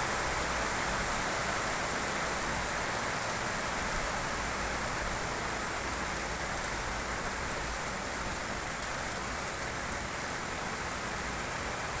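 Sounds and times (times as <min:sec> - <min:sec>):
rain falling steadily: 0:00.0 - 0:12.0
faint ticks of raindrops: 0:02.6 - 0:12.0.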